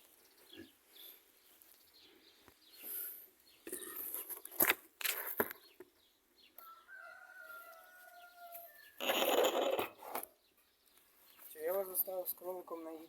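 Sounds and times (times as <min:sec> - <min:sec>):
chicken calling: 0:06.6 - 0:10.2.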